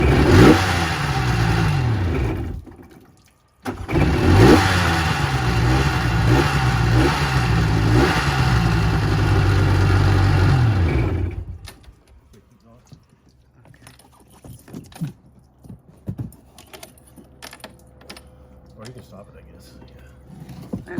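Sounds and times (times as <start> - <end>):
jet ski engine revving: 0.0 - 2.8, 3.7 - 11.7.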